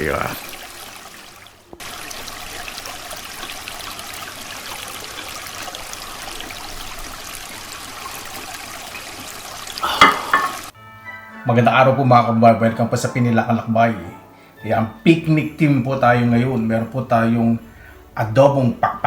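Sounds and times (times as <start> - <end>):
creek water running: 0.0 - 10.8.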